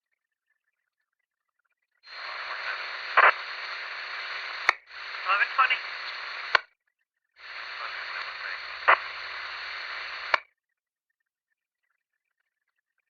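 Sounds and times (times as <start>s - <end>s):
radio squelch click: 2.1s - 6.6s, 7.4s - 10.4s
radio static hiss: 2.1s - 6.6s, 7.4s - 10.4s.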